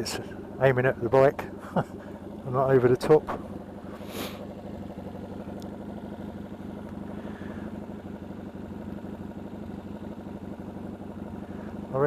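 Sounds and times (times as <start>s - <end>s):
engine popping: 0.0s - 12.0s
motorcycle engine idling: 0.0s - 12.0s.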